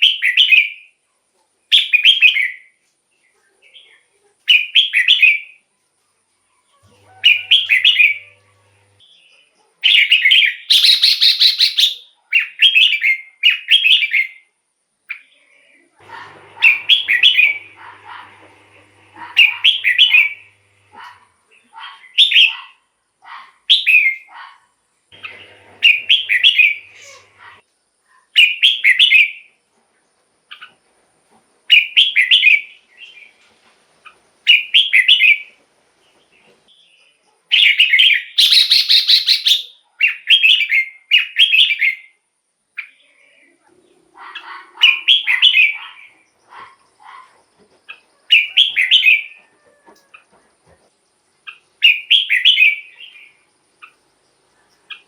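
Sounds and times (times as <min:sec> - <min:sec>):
bird singing warbled phrases: 0:07.2 - 0:14.4, 0:19.1 - 0:22.8, 0:25.2 - 0:27.6, 0:37.6 - 0:42.1, 0:42.8 - 0:49.4, 0:51.5 - 0:54.1.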